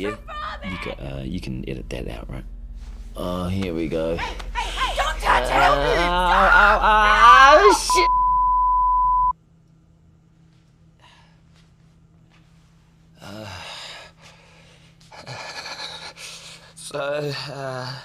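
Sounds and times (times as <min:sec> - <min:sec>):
electronic beep tone: 0:07.9 - 0:09.3.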